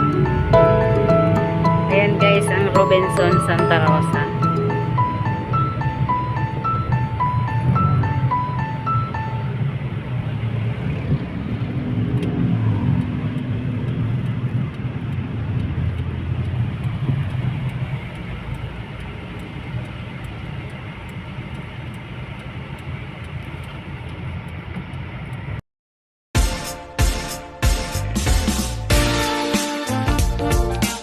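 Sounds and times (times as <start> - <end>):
music: 0.0 - 9.6, 26.4 - 31.0
engine and road rumble: 0.0 - 25.6, 27.0 - 31.0.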